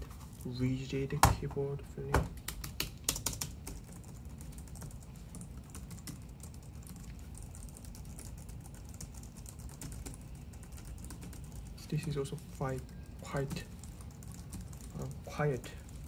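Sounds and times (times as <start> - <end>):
rapid typing on keyboard: 2.3 - 16.0.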